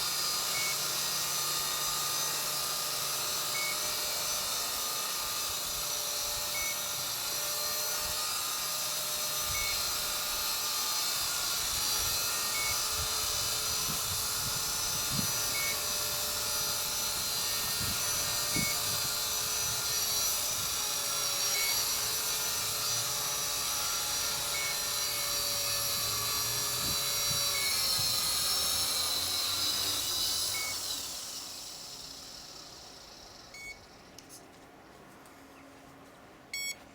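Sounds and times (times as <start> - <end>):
rc helicopter motor whine: 0.0 - 34.4
wind rumble on microphone: 12.8 - 20.8, 25.9 - 28.4
short faint beep: 36.6 - 36.8.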